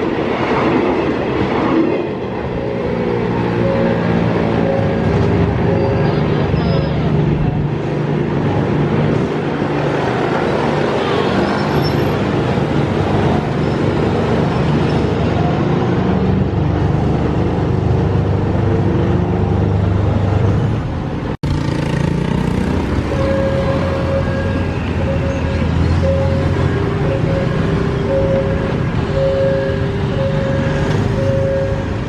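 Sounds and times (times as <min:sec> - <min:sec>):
train engine drone and rumble: 0:00.0 - 0:21.4, 0:22.3 - 0:32.0.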